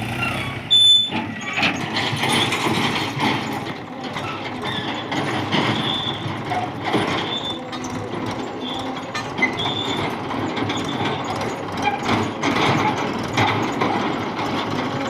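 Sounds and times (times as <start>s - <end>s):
backhoe engine running: 0.0s - 15.0s
metal clattering and clanking: 0.1s - 15.0s
reversing beep: 0.7s - 1.2s.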